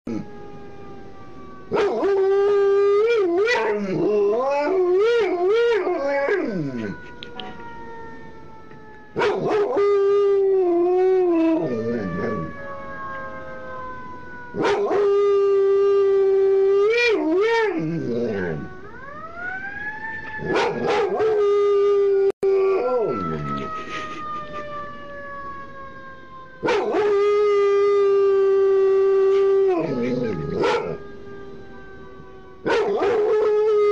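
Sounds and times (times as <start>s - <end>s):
siren wailing: 0.1s - 33.9s
dog howling: 16.9s - 18.7s, 20.4s - 23.7s, 26.6s - 31.0s, 32.6s - 33.9s.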